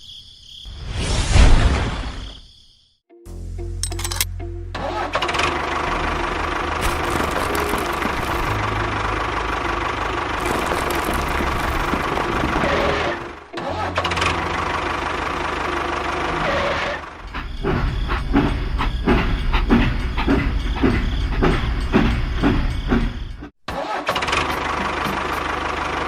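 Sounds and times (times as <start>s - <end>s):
mechanical rattle: 3.8s - 4.3s, 6.8s - 8.6s, 10.4s - 13.1s
small engine running: 3.8s - 23.1s, 24.1s - 26.0s
uneven knocks and clatter: 10.4s - 13.0s.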